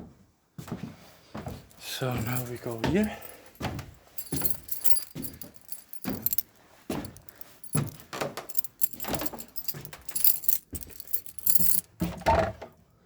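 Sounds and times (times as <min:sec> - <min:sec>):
footsteps with rattle: 0:01.7 - 0:11.9.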